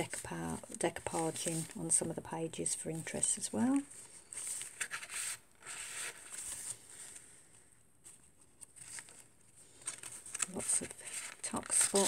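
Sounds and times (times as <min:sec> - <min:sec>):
paper pages rustling: 0:00.0 - 0:02.2, 0:03.1 - 0:12.0.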